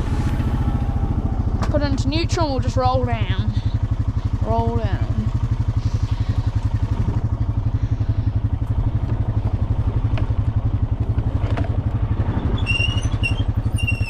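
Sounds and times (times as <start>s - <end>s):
quad bike engine idling: 0.0s - 14.0s
short high squeaks: 12.3s - 14.0s.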